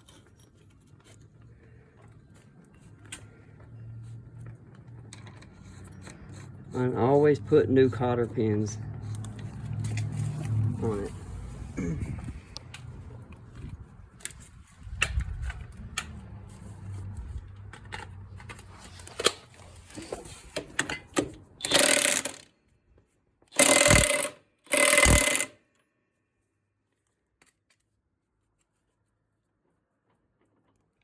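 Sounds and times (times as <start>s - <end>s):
rasping mechanical noise bursts: 21.6s - 22.4s, 23.6s - 25.5s.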